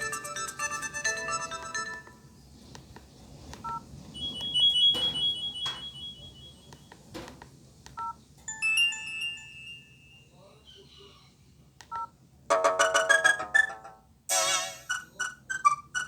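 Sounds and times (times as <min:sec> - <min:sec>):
phone ringtone: 0:00.0 - 0:02.2, 0:03.7 - 0:06.7, 0:08.5 - 0:10.3, 0:12.5 - 0:16.0
short electronic beeps: 0:04.2 - 0:06.8.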